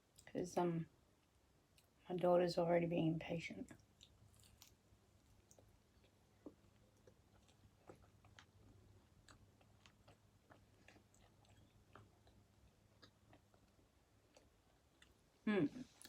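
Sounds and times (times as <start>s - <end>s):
chewing with mouth clicks: 3.8s - 15.2s.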